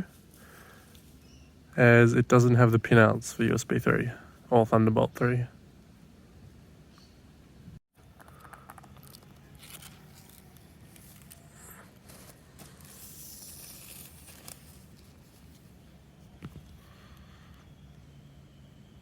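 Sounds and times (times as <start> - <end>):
packaging rustling and tearing: 8.7 - 15.7.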